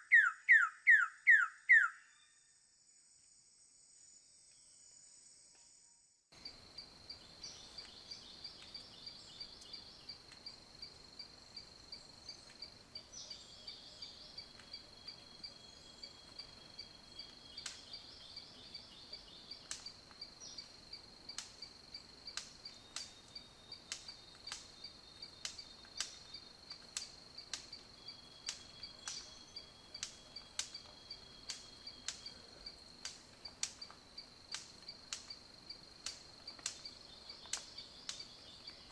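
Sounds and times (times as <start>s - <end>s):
crickets chirping: 0.0s - 38.9s
sharp clicks: 36.0s - 36.9s.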